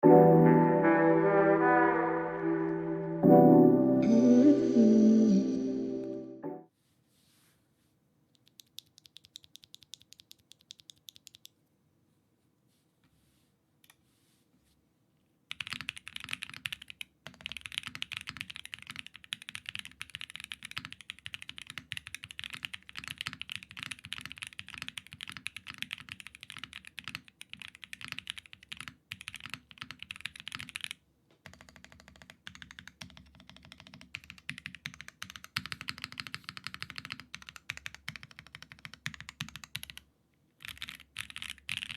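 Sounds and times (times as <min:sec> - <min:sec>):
mechanical keyboard typing: 0:08.4 - 0:11.5, 0:15.5 - 0:41.9.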